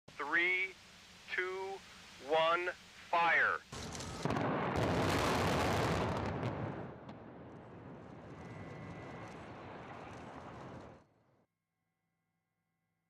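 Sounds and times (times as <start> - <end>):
explosive demolition rumble: 3.8 - 11.1.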